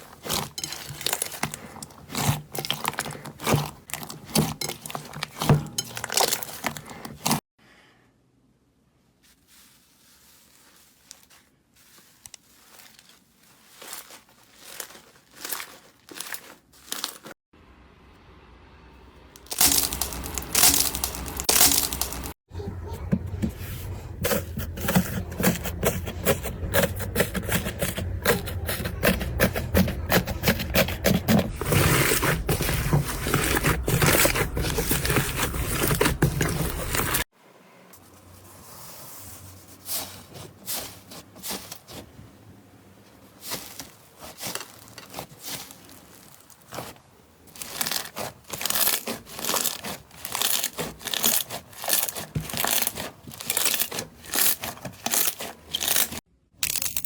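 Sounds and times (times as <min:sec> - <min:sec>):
slime crackling and popping: 0:19.4 - 0:22.3, 0:47.6 - 0:57.0.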